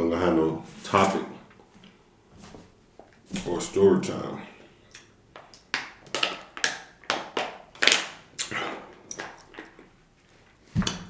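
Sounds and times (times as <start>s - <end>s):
close chewing and lip smacks: 4.9s - 10.6s.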